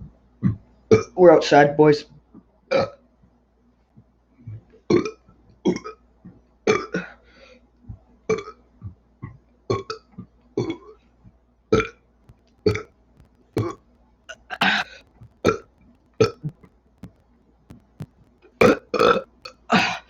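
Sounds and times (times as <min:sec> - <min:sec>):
person burping: 0:13.6 - 0:15.6, 0:18.6 - 0:20.0.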